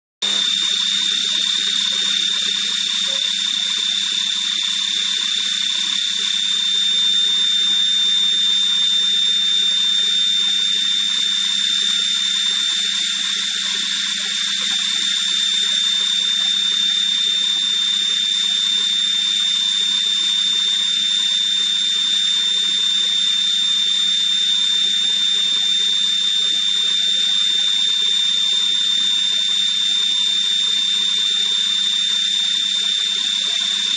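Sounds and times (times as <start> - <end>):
high-pitched machine whine: 0.2 - 33.9.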